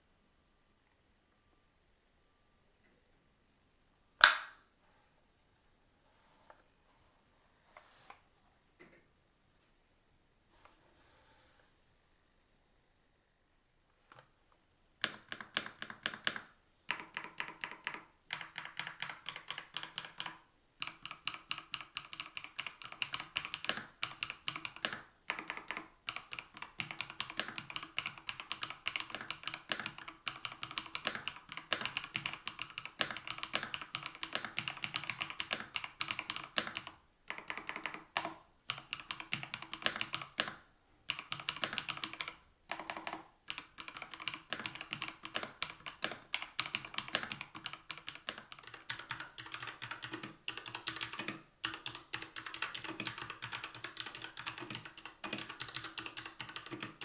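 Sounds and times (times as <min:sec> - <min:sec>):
mechanical keyboard typing: 0:15.0 - 0:57.0.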